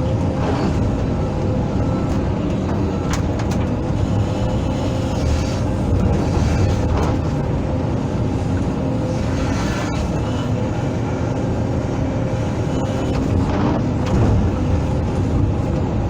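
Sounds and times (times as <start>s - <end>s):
excavator diesel engine rumbling: 0.0s - 16.0s.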